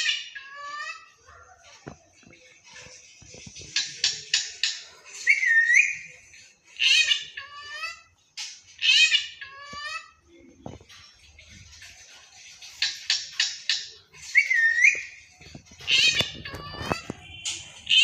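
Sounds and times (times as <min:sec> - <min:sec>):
parrot whistling and calling: 0:03.8 - 0:08.1, 0:08.8 - 0:10.2, 0:12.8 - 0:18.0.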